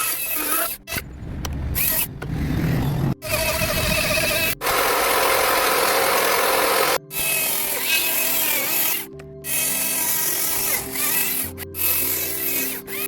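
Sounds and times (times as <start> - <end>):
background music: 0.0 - 13.0
chainsaw cutting wood: 3.1 - 13.0.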